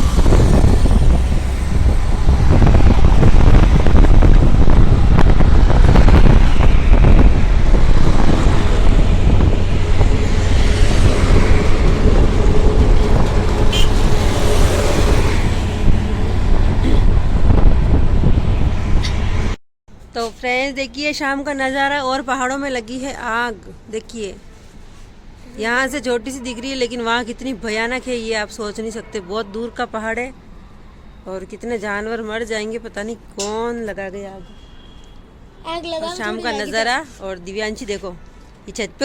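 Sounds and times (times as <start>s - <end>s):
road traffic noise: 0.0s - 39.0s.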